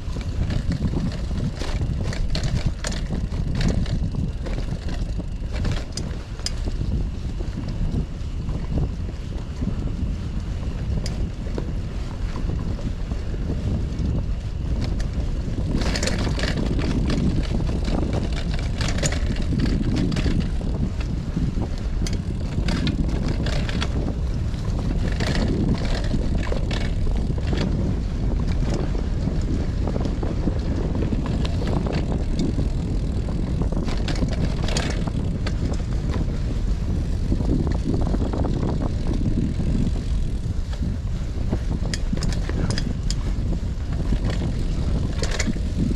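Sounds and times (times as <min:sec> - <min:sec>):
bike tyres rattling on rough ground: 0:00.0 - 0:45.9
wind rumbling on microphone: 0:00.0 - 0:45.9.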